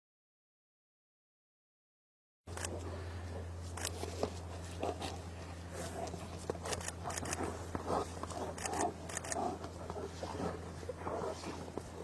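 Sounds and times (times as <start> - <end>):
bears growling and huffing: 2.5 - 12.0
low hum: 2.5 - 12.0.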